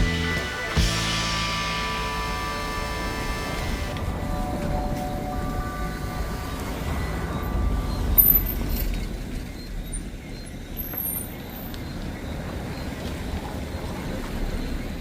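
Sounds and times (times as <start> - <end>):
motor vehicle rumble: 0.0 - 10.2.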